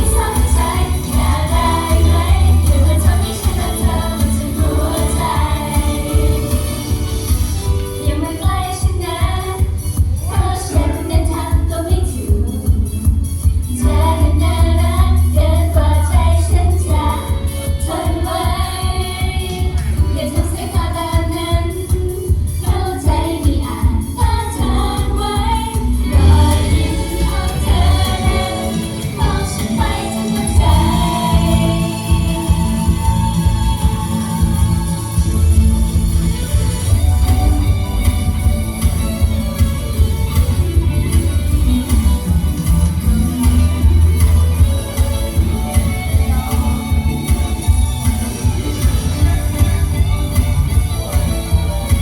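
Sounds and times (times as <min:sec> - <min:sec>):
heavy bass beat: 0:00.0 - 0:07.5, 0:24.6 - 0:52.0
women singing pop music: 0:00.0 - 0:52.0.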